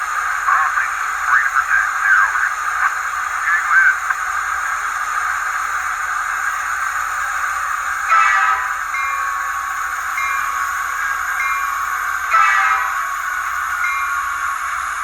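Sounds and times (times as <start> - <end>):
tinny speaker hiss: 0.0 - 15.0
warbling radio-like sounds: 0.1 - 9.1.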